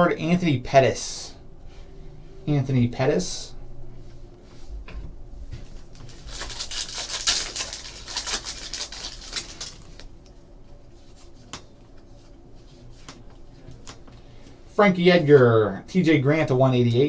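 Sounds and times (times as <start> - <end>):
foil wrapper crinkling: 5.9 - 10.2.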